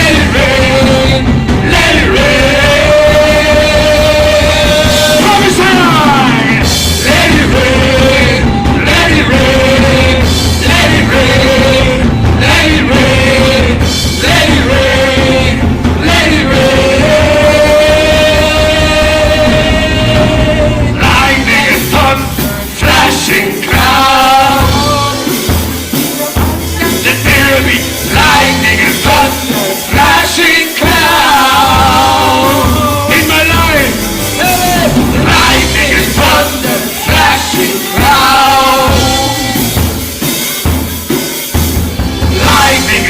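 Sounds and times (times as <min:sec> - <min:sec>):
band with drum kit: 0:00.0 - 0:43.0
person singing: 0:26.8 - 0:40.0, 0:42.3 - 0:43.0.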